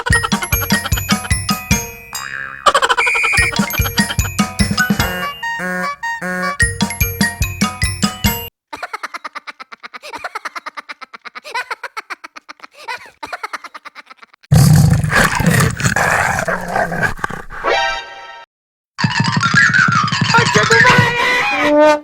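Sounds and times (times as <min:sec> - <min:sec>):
cartoon music: 0:00.0 - 0:08.5
roar-like growl: 0:14.5 - 0:17.7.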